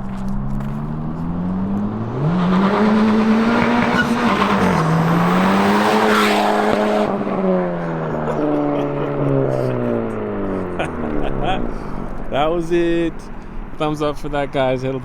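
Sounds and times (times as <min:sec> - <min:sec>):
car engine accelerating hard: 0:00.0 - 0:14.0
loud intake rush: 0:02.2 - 0:13.9.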